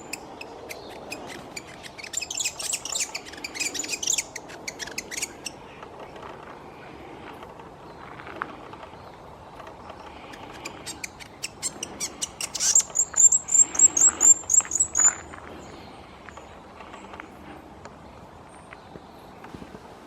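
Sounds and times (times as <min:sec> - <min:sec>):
small bird calling: 0:00.0 - 0:07.0, 0:08.5 - 0:17.3.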